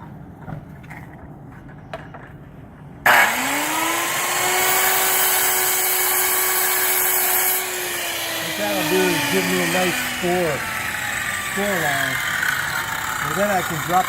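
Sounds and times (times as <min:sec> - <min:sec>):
circular saw motor whining: 0:03.1 - 0:14.0.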